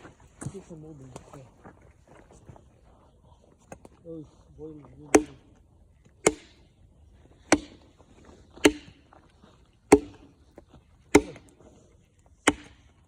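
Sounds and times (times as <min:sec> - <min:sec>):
axe chopping wood: 0:05.1 - 0:05.5, 0:06.1 - 0:06.7, 0:07.3 - 0:09.2, 0:09.8 - 0:11.7, 0:12.3 - 0:13.0.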